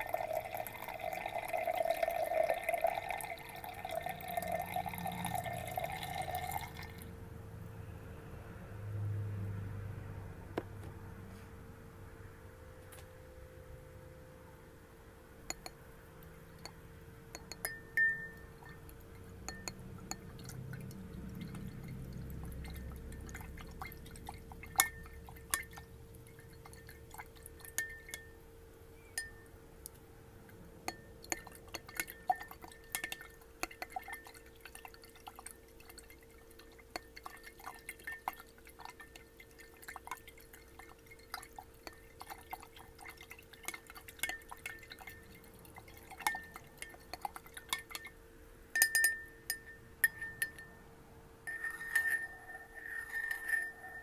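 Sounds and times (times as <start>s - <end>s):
glass being tapped: 0.0s - 7.0s, 15.5s - 15.8s, 16.6s - 23.6s, 24.5s - 26.9s, 27.6s - 28.4s, 29.0s - 29.5s, 30.9s - 35.0s, 46.1s - 50.8s, 51.5s - 54.0s
water sloshing in glass: 0.0s - 7.1s, 15.5s - 15.8s, 16.4s - 28.4s, 30.8s - 50.8s, 51.5s - 54.0s.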